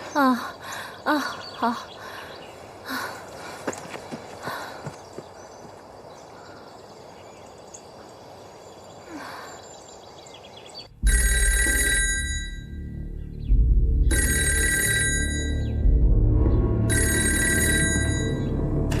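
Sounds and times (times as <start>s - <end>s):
electric telephone bell ringing: 11.1s - 12.8s, 14.1s - 15.7s, 16.9s - 18.5s
low dark background music: 12.1s - 19.0s.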